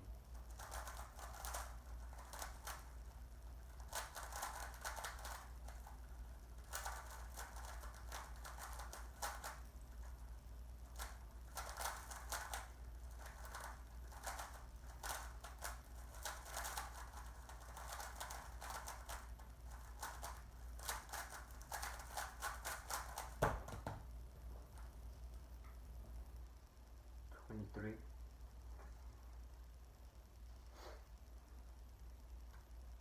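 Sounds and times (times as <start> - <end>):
rapid plastic clicking: 0.3 - 23.9.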